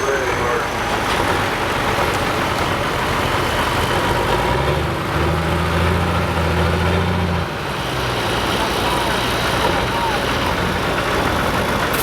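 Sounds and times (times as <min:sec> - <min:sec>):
tractor engine idling: 0:00.0 - 0:04.0, 0:08.4 - 0:12.0.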